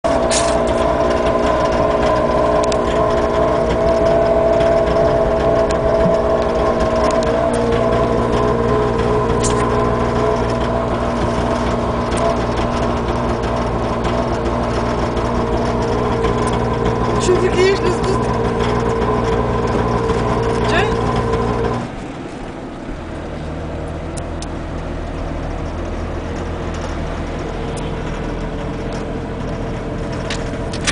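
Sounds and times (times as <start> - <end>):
car engine running: 0.0 - 30.9
faint engine tick: 23.9 - 30.9.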